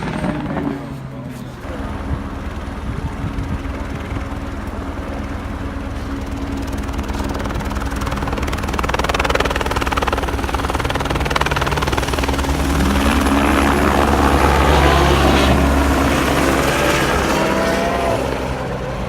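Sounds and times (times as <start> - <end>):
helicopter rotor chopping: 0.0 - 19.0.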